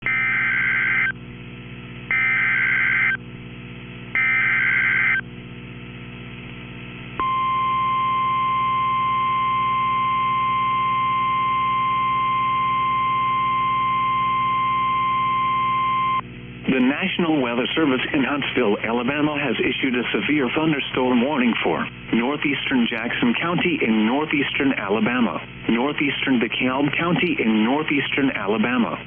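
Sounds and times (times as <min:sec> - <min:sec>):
steady warning alarm tone: 0:00.0 - 0:01.2, 0:02.1 - 0:03.2, 0:04.2 - 0:05.2, 0:07.2 - 0:16.2
low steady hum: 0:00.0 - 0:29.0
buzzy digital data bursts: 0:02.1 - 0:03.2, 0:04.2 - 0:05.2.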